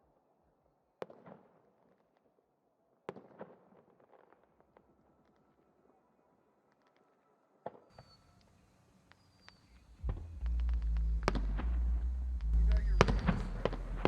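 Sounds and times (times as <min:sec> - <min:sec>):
firework pops and crackles: 0:01.0 - 0:02.3, 0:03.0 - 0:05.4, 0:07.7 - 0:14.0
loud low rumble: 0:09.9 - 0:14.0
firework bang: 0:10.0 - 0:14.0.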